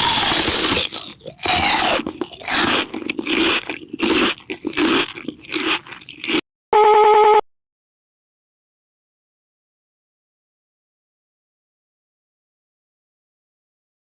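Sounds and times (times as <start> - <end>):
crunchy food being chewed: 0.0 - 6.4
buzzing electronic tone: 6.8 - 7.4.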